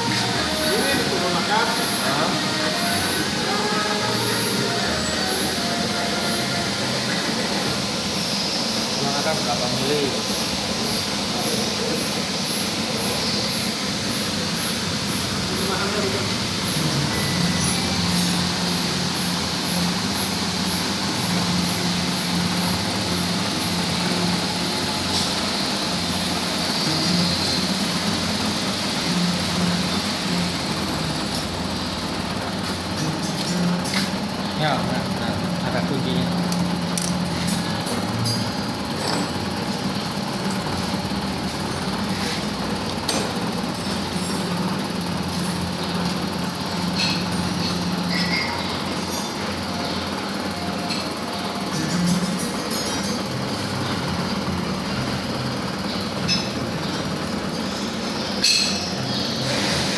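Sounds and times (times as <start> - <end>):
milling machine humming: 0.0 - 59.9.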